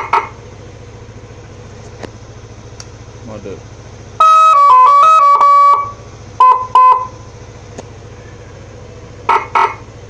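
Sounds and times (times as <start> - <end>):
scooter horn melody: 0.0 - 0.5, 4.1 - 7.5, 8.3 - 10.0
scooter engine idling: 0.0 - 10.0
short horn beeps: 4.2 - 7.3.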